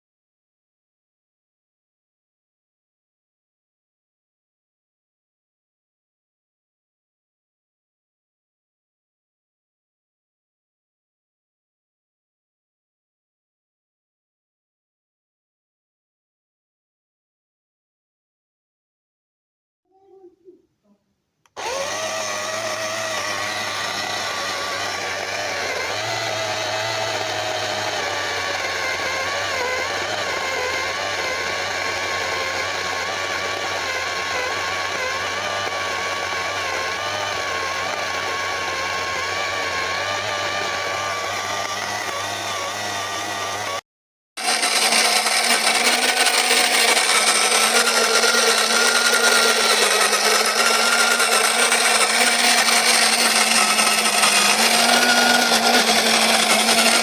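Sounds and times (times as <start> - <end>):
electric coffee grinder whirring: 21.5 - 43.8, 44.4 - 57.0.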